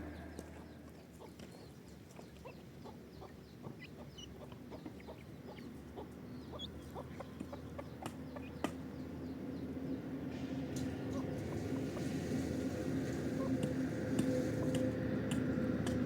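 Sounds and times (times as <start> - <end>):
chickens clucking: 0.0 - 9.2, 10.6 - 16.0.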